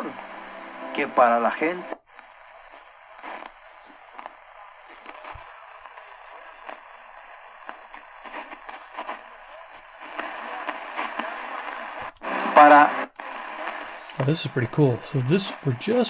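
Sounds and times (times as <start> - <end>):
radio static hiss with crackles: 0.0 - 16.0
faint voice on radio: 3.7 - 12.9, 14.0 - 16.0.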